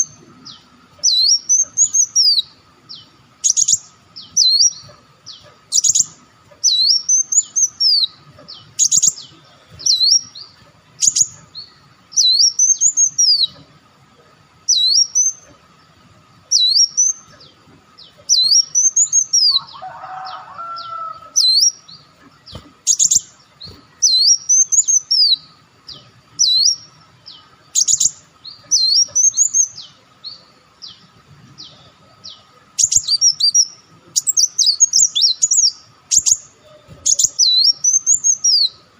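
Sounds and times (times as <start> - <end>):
bird chips and whistled phrases: 32.8 - 38.8.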